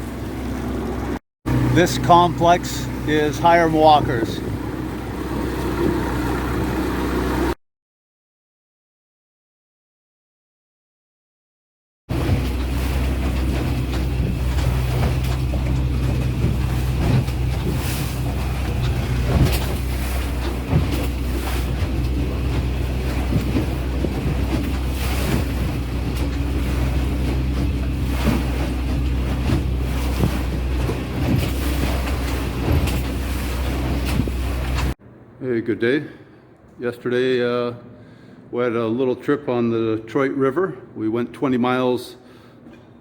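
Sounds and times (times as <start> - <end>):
outboard motor running: 0.0 - 7.6, 12.1 - 35.0
water rushing past hull: 0.0 - 7.6, 12.1 - 35.0
wind buffeting microphone: 12.1 - 35.0.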